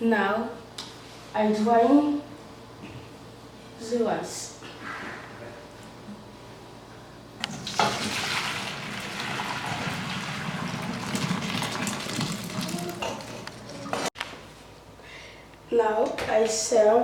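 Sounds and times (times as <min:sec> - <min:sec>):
water gushing from pot: 0:07.5 - 0:14.1.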